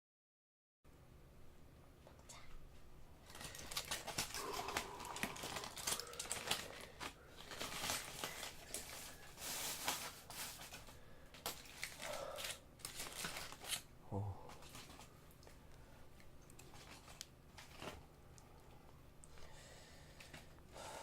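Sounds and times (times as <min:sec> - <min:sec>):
packaging crinkling: 0:03.2 - 0:13.9, 0:16.4 - 0:18.1
packaging tearing: 0:03.2 - 0:13.9.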